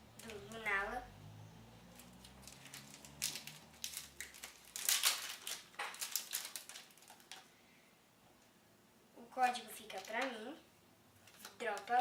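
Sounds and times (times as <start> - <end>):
foil wrapper crinkling as torn open: 2.0 - 7.5, 9.9 - 10.2, 11.2 - 12.0.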